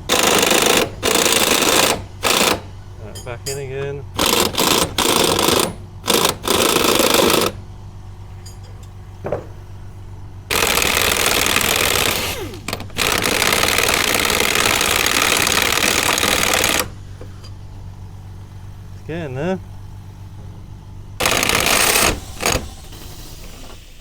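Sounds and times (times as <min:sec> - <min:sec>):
pneumatic impact wrench hammering: 0:00.0 - 0:02.8, 0:04.2 - 0:07.6, 0:10.5 - 0:17.6, 0:21.2 - 0:24.0
steady low hum: 0:00.0 - 0:23.2.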